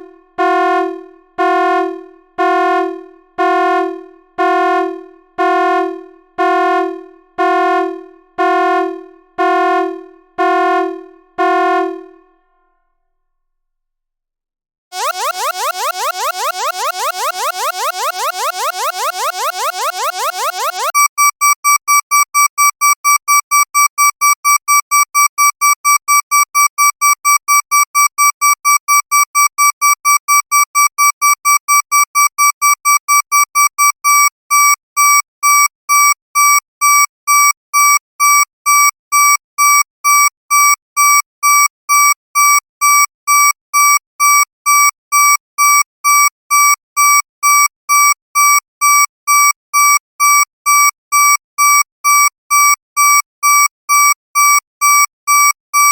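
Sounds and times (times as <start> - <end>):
electronic alarm beeping: 15.0 - 21.0.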